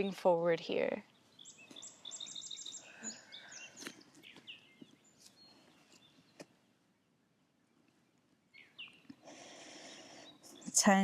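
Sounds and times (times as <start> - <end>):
birds chirping: 0.8 - 11.0.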